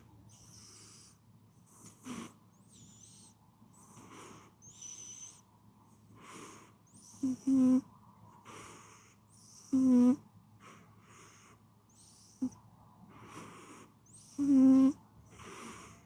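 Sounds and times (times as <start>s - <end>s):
cat snoring: 0.0s - 3.3s, 3.9s - 5.4s, 6.2s - 16.0s
whistling nose breaths: 0.3s - 5.4s, 6.2s - 7.8s, 10.6s - 12.6s, 13.2s - 16.0s.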